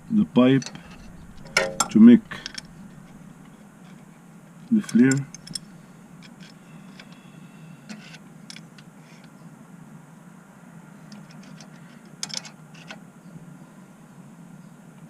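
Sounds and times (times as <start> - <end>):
steady low hum: 0.0 - 12.2
metallic clicks of flaring tool: 4.8 - 7.2.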